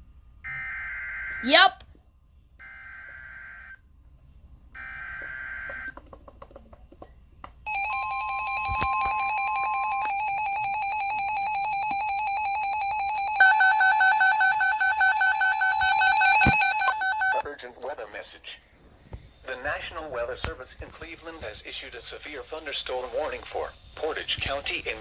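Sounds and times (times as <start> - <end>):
pulsing electronic alarm: 0.4 - 1.6, 2.6 - 3.8, 4.7 - 5.9, 7.7 - 17.4
steady alert tone: 7.7 - 17.4.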